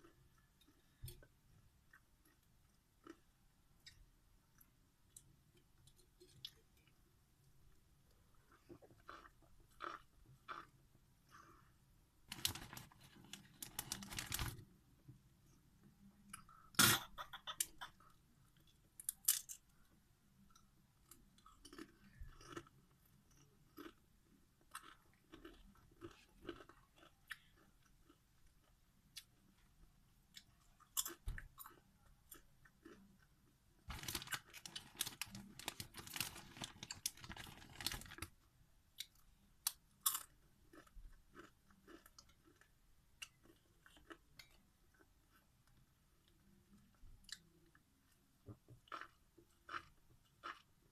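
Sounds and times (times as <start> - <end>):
chips crunching while chewed: 9.0 - 10.7, 21.6 - 22.7, 24.7 - 28.2, 33.9 - 38.3, 48.9 - 50.7.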